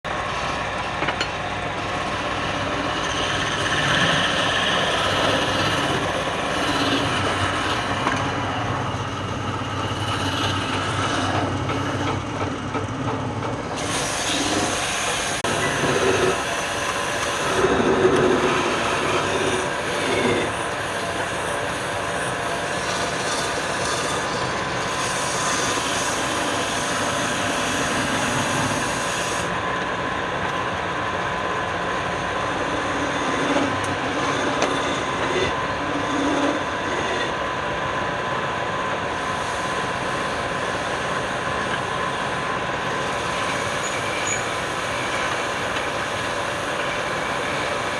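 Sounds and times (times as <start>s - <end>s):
wood lathe running: 1.8s - 29.5s, 31.9s - 36.7s
turning tool cutting wood: 21.7s - 29.5s.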